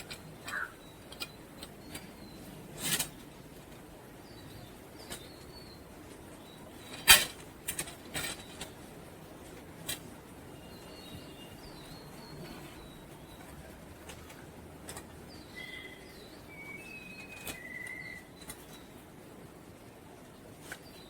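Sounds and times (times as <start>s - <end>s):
faint bird chirps: 15.3s - 19.0s.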